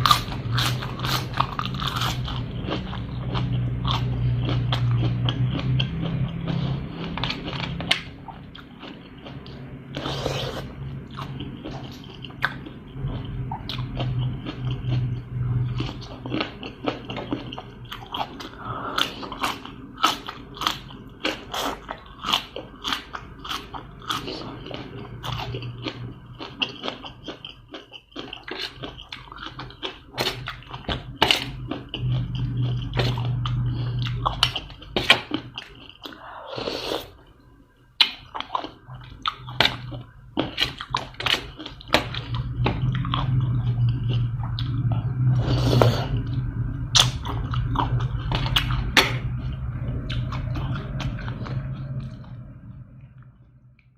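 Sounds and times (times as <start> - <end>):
person chewing crunchy food: 0.0 - 37.4, 38.0 - 52.8.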